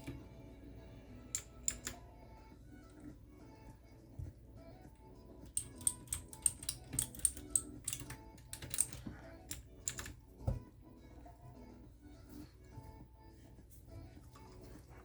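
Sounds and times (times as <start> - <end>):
clicky mechanical keyboard typing: 5.6 - 10.2.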